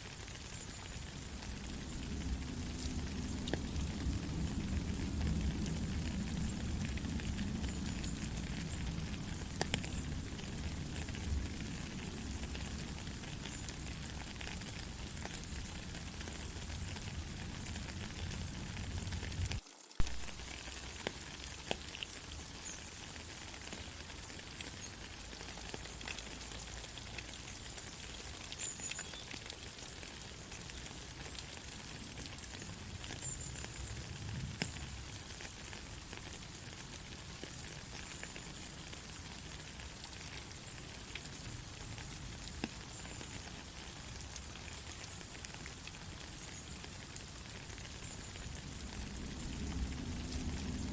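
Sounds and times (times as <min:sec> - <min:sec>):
drips and patter: 0:00.0 - 0:50.9
steady rain: 0:00.0 - 0:50.9
low rumble: 0:01.2 - 0:20.3, 0:48.4 - 0:50.9.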